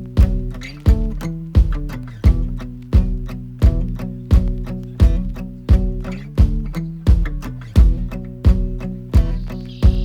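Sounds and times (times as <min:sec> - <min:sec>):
background music with steady beat: 0:00.0 - 0:10.0.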